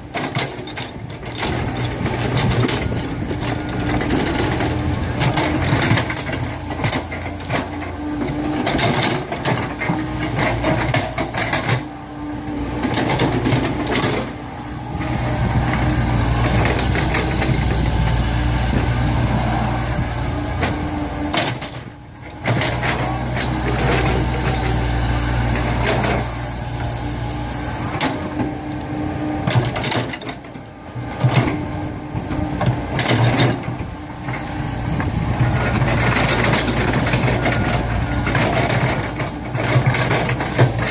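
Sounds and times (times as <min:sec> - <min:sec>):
excavator diesel engine: 0:00.0 - 0:40.9
clanks and knocks: 0:00.1 - 0:11.9, 0:20.6 - 0:24.2, 0:35.0 - 0:40.9.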